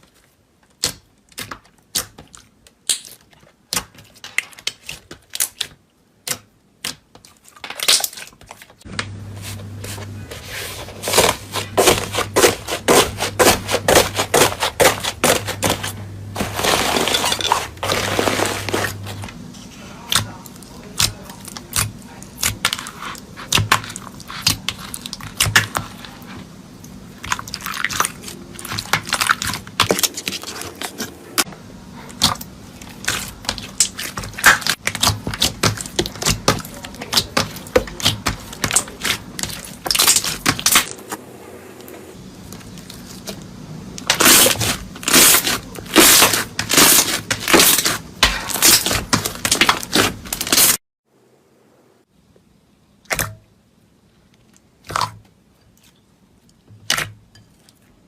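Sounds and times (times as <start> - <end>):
slime crackling and popping: 0.7 - 8.4
low steady hum: 8.8 - 58.0.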